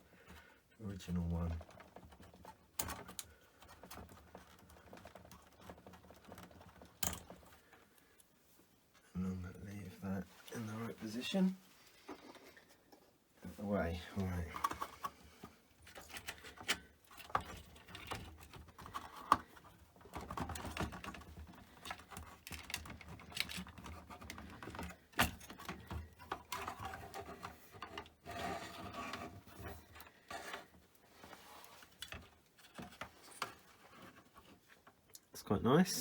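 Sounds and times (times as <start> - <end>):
metal and plastic parts rattling: 0.2 - 7.9, 14.1 - 35.1.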